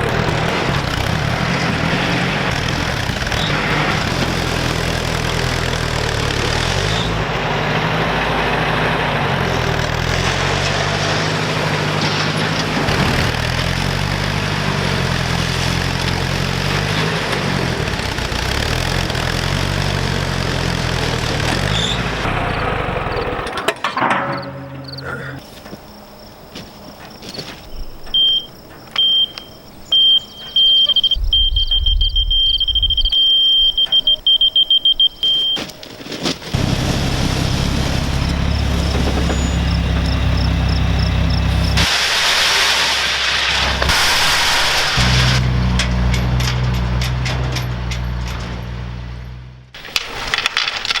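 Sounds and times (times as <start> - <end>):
engine hum: 0.0 - 27.2, 28.0 - 51.0
electronic warning beeper: 28.2 - 35.7
loud low drone: 31.1 - 34.7
crunching and sharp clicks: 49.8 - 51.0.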